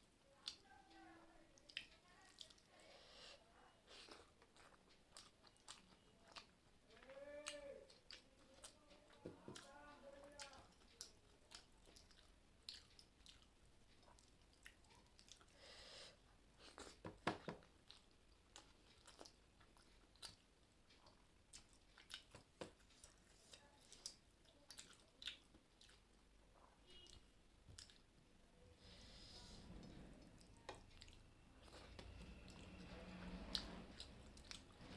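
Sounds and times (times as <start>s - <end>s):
person chewing food: 1.6s - 34.9s.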